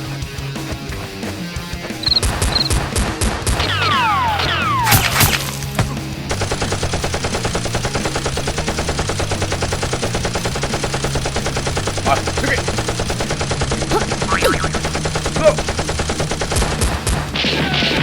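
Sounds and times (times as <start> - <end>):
rock background music: 0.0 - 18.0
rapid machine-gun fire: 1.9 - 18.0
falling whistles: 2.0 - 2.8
gunshots: 2.0 - 18.0.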